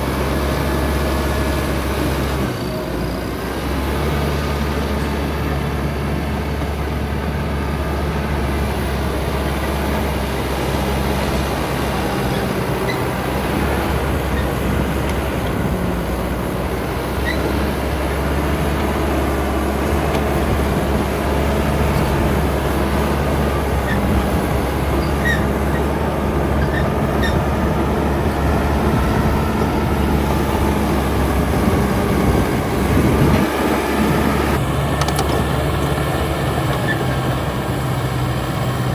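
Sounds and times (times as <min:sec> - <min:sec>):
bulldozer diesel engine: 0:00.0 - 0:38.9
squeaking steel tracks: 0:12.0 - 0:16.0, 0:16.7 - 0:17.9, 0:21.4 - 0:33.9, 0:34.5 - 0:37.6.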